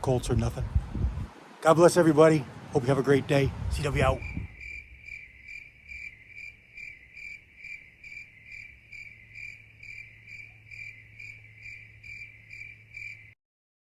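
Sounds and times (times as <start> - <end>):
cricket chirping: 4.1 - 13.4.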